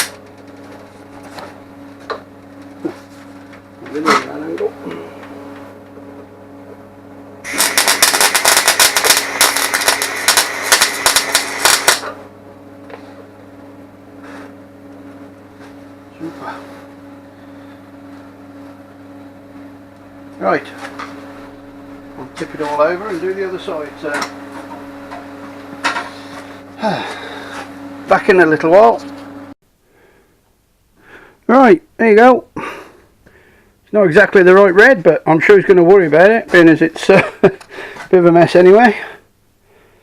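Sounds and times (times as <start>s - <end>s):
welding arc crackling: 0.0s - 4.8s, 7.4s - 29.4s
steady low hum: 0.0s - 40.0s.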